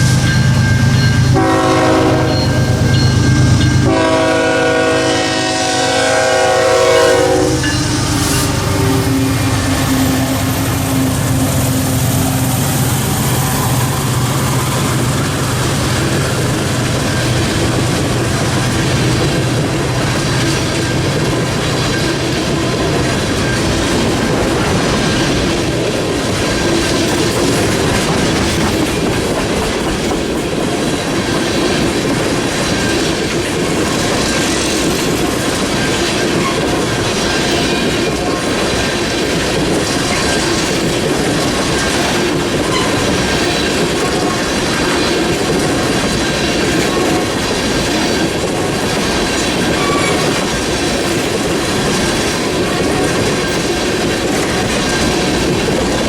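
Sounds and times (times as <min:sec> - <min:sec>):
freight train cars rolling: 0:00.0 - 0:56.0
wheels clattering over rail joints: 0:12.8 - 0:56.0
wheel squeal: 0:42.0 - 0:43.7, 0:49.3 - 0:50.5.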